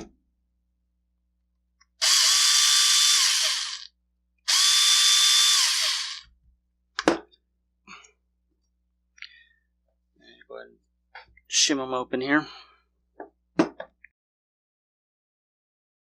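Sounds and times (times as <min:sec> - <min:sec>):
cordless drill whining: 0:02.0 - 0:03.9, 0:04.5 - 0:06.3.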